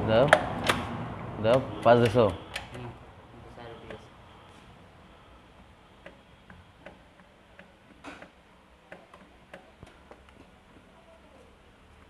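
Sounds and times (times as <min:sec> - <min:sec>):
sharp irregular engine ticks: 0:01.4 - 0:02.8.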